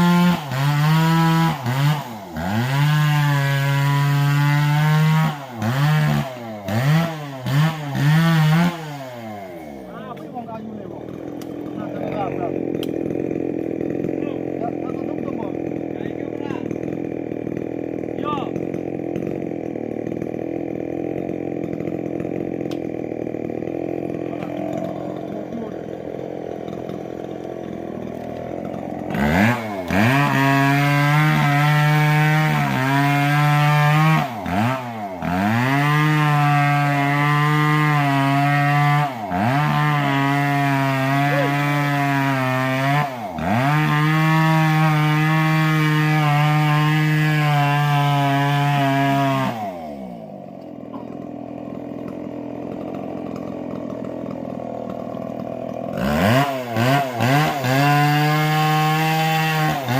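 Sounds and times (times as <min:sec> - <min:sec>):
chainsaw cutting log: 0:00.0 - 0:59.9.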